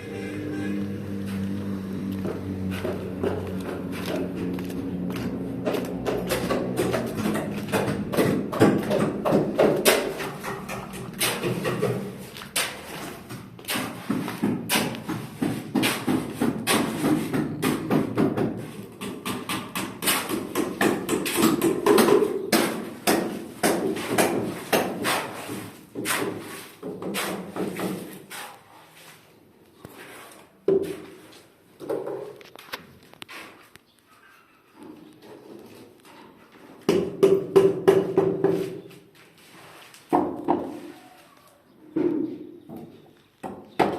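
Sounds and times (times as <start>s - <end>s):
hammering on fence: 2.2s - 12.8s, 13.7s - 25.3s, 36.9s - 38.7s.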